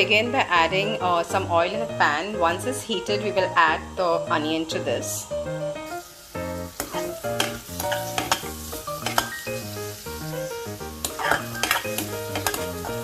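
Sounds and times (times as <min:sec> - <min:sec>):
background music: 0:00.0 - 0:13.0
onion sizzling in hot oil: 0:00.0 - 0:13.0
spatula scraping pan: 0:06.8 - 0:09.7, 0:11.0 - 0:13.0.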